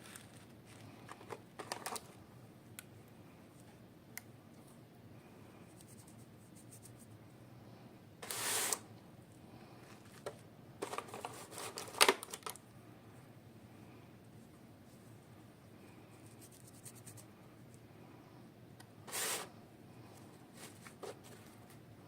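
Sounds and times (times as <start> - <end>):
packaging crinkling and clicking: 0.0 - 2.2, 10.1 - 12.6
toy packaging rustling: 0.0 - 2.2, 9.8 - 12.6.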